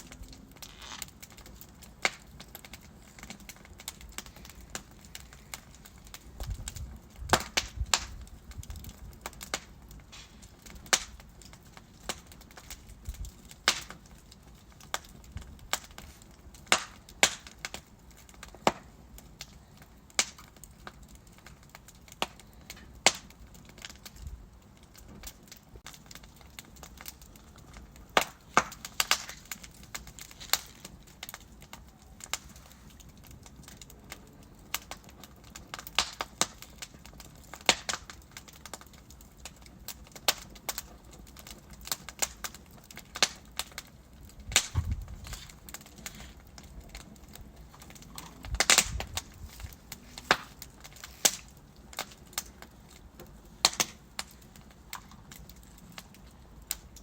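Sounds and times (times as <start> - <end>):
logs crackling and popping: 0.0 - 57.0
heavy pops with low thud: 44.5 - 45.6.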